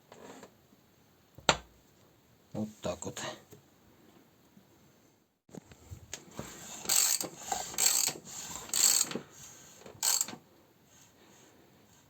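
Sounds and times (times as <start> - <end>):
mechanical ratcheting clicks: 6.9 - 9.2, 10.0 - 10.4.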